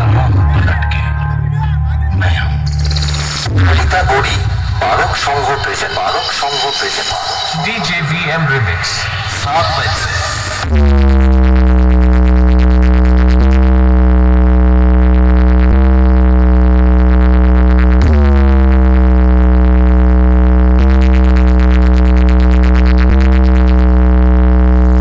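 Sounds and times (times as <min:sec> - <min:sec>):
dj remix music: 0:00.0 - 0:13.6, 0:20.7 - 0:23.9.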